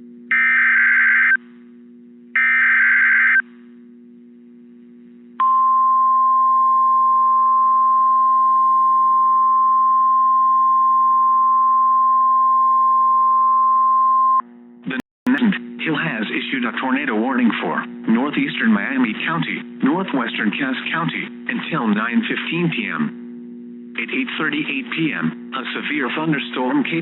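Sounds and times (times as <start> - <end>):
low radio hum: 0.0 - 12.7, 14.3 - 27.0
steady warning alarm tone: 0.3 - 1.4, 2.4 - 3.4.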